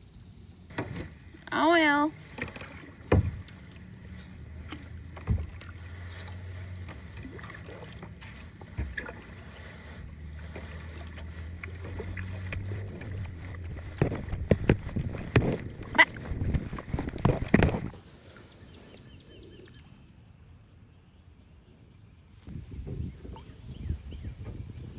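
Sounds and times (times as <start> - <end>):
paddle splashes: 0.7 - 19.0
paddle knocking on kayak: 2.2 - 18.0.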